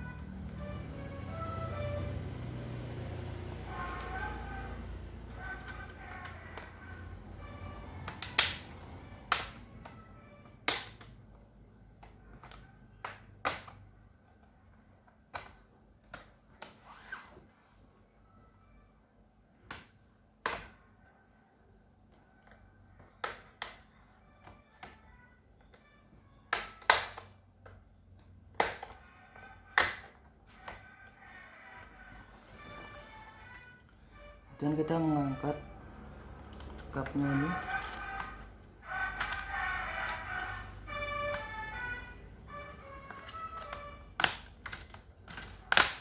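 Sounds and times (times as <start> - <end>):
plastic clips popping loose: 8.0 - 11.2, 12.0 - 13.8, 26.5 - 27.7, 28.5 - 29.0, 29.7 - 31.0, 43.0 - 46.0.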